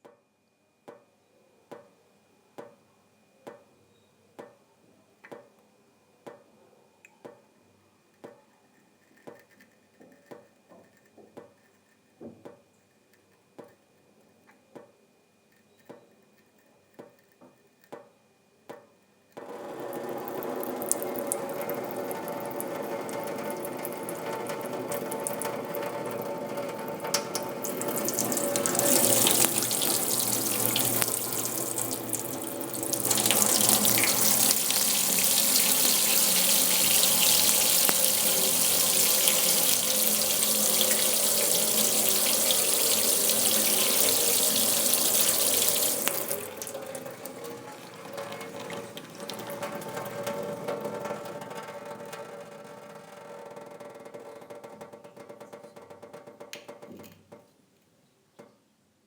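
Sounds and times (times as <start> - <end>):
tap water running into basin: 19.4 - 57.4.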